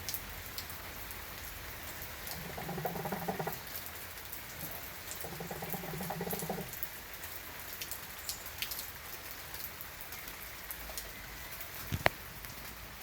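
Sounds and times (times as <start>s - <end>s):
raindrops ticking on hard surface: 0.0s - 13.0s
steady rain falling: 0.0s - 13.0s.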